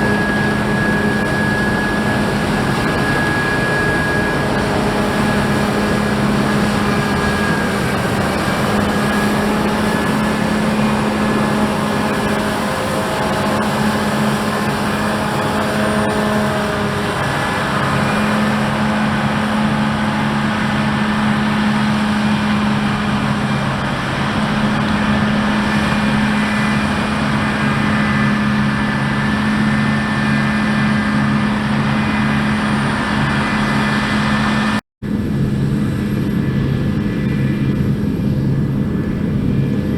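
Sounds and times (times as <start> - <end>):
combine harvester engine drone: 0.0 - 39.9
machinery noise: 0.0 - 39.9.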